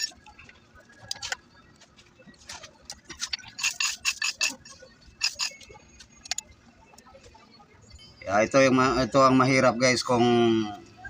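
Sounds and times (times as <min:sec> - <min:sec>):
metal parts clicking and clinking: 0:03.1 - 0:06.4.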